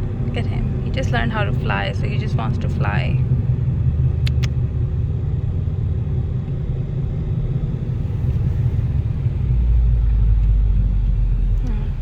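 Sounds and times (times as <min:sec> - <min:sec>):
car road rumble from inside: 0:00.0 - 0:12.0.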